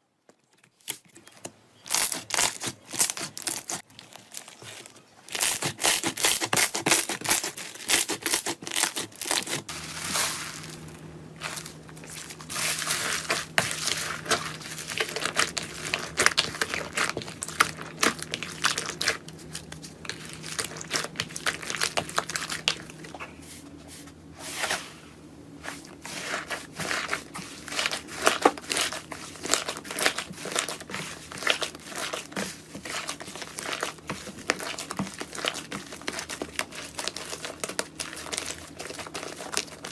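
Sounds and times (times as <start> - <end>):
faint low hum: 9.6 - 39.9.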